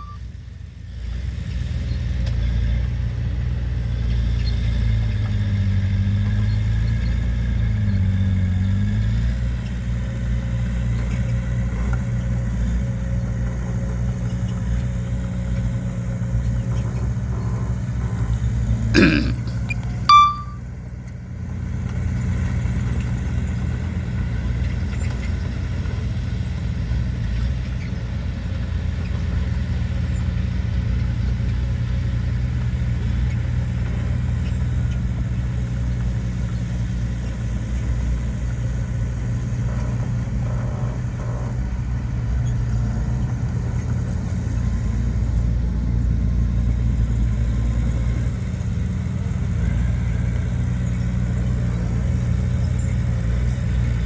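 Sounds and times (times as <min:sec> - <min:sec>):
diesel engine droning: 0:00.9 - 0:20.8, 0:28.3 - 0:54.0.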